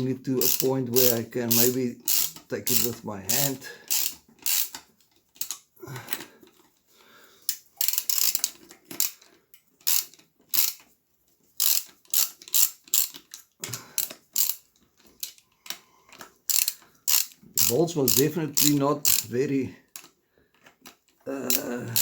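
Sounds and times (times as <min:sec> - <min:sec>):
ratchet wrench clicking: 0:00.4 - 0:04.8, 0:05.4 - 0:05.6, 0:07.5 - 0:10.8, 0:11.6 - 0:19.4, 0:21.5 - 0:22.0.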